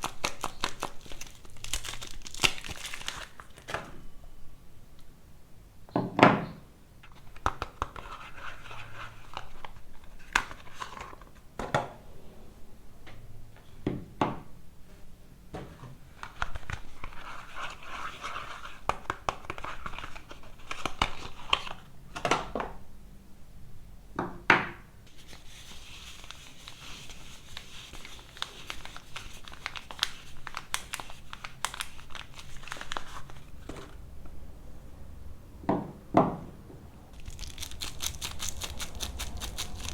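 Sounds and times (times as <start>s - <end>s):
wrappers crinkling and rustling: 0.0s - 3.8s, 25.1s - 34.0s, 37.1s - 39.9s.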